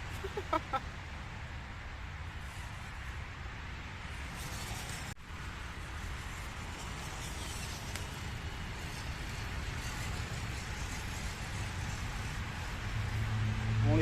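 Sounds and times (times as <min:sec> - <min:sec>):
steady hiss: 0:00.0 - 0:14.0
toy truck motor whirring: 0:04.1 - 0:13.2.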